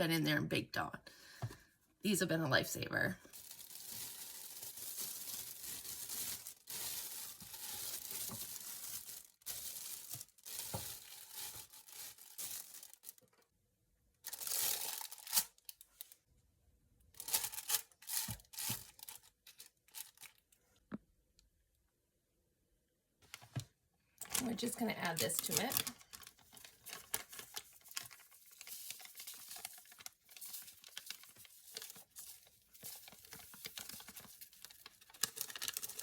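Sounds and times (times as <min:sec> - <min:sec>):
plastic liner crinkling: 0:03.0 - 0:13.4, 0:14.2 - 0:16.2, 0:17.2 - 0:20.6, 0:23.3 - 0:36.0.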